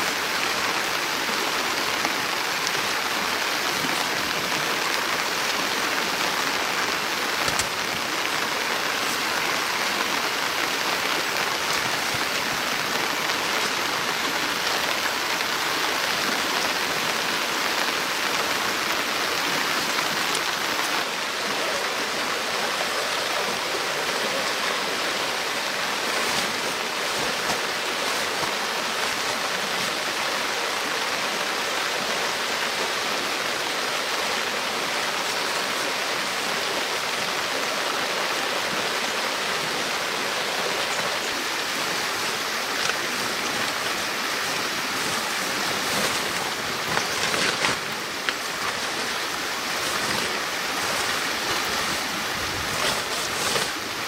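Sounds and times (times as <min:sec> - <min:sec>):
rushing water: 0:00.0 - 0:54.0.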